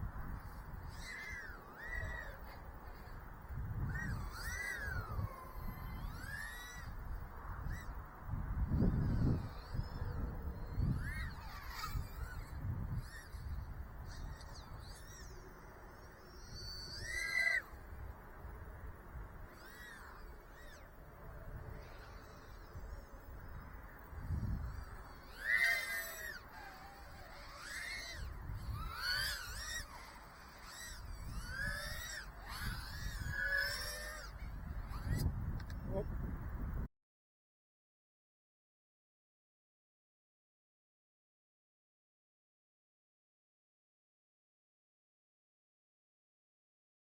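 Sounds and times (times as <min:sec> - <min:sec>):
drone motors whining: 0:00.0 - 0:08.0, 0:08.6 - 0:36.1.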